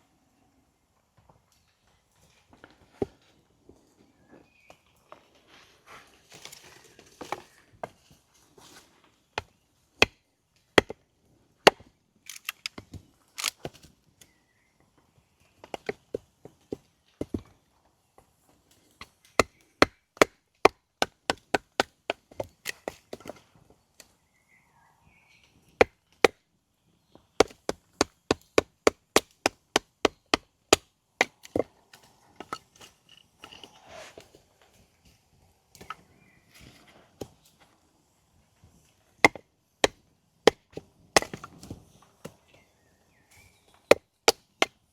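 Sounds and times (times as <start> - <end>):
wood being chopped: 9.4 - 11.0, 11.6 - 13.9, 19.0 - 23.4, 25.8 - 26.4, 27.4 - 31.7, 39.2 - 42.4, 43.9 - 44.9.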